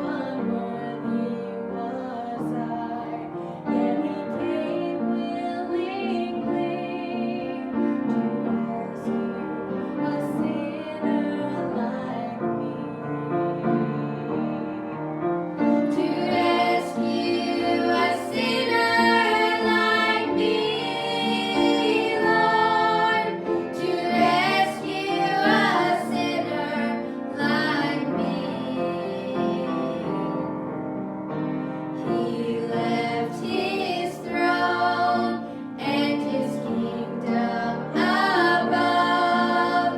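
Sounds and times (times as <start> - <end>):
voices singing a hymn: 0.0 - 39.9
instrumental accompaniment: 11.8 - 39.9.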